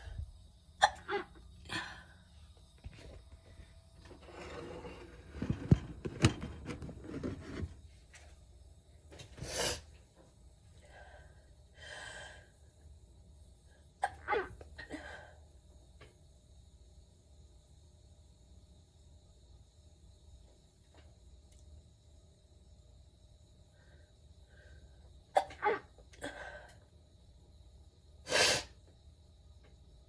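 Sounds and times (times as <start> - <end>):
person sneezing: 0.8 - 2.0, 14.0 - 15.3, 25.4 - 26.5.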